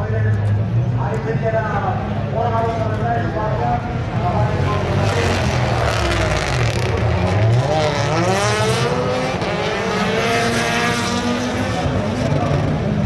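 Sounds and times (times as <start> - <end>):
rally car engine at high revs: 3.7 - 13.0.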